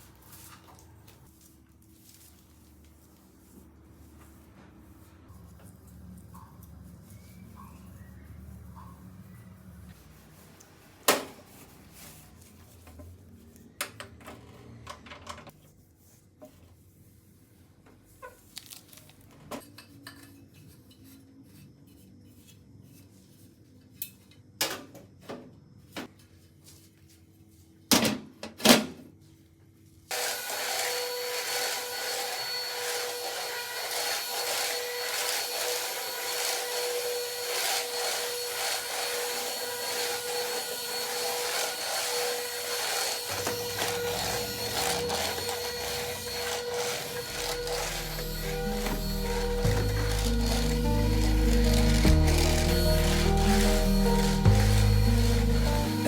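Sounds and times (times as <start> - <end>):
vacuum cleaner running: 30.1 - 56.0.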